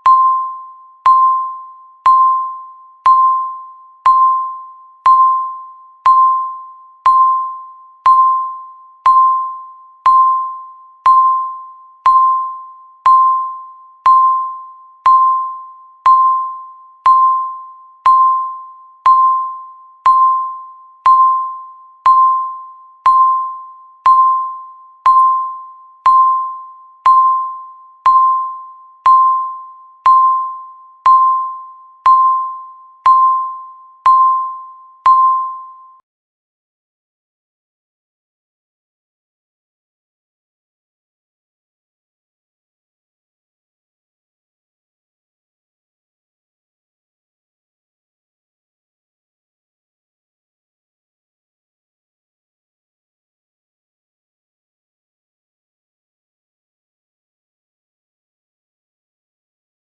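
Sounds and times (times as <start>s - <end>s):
countdown timer beeping: 0.0s - 36.0s.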